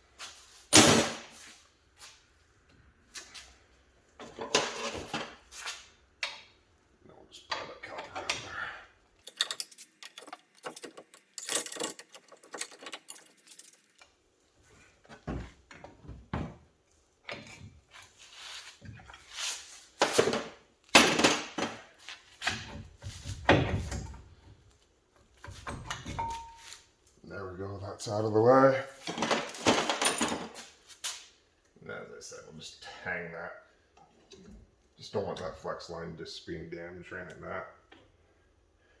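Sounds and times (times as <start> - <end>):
hand tools clinking on steel: 9.2 - 14.1.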